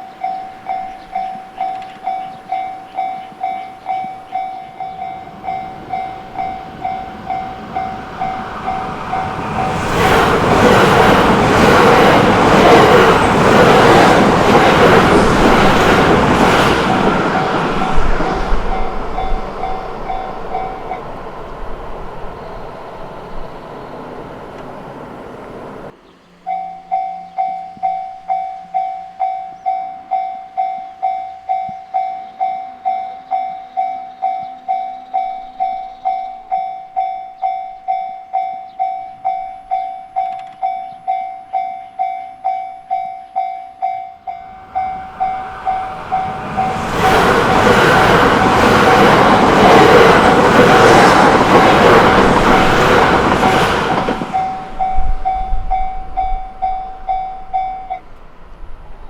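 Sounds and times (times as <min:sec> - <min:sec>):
level-crossing warning bell dinging: 0:00.0 - 0:21.6, 0:26.4 - 0:58.2
train rushing past: 0:00.2 - 0:26.0, 0:43.8 - 0:59.0.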